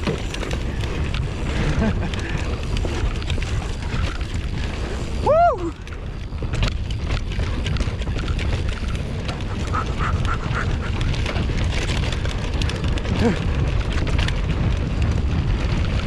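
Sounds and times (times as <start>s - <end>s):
quick squeaks: 0.0s - 1.0s
bike rattling: 0.0s - 5.1s, 11.3s - 14.3s
wind buffeting microphone: 0.0s - 16.0s.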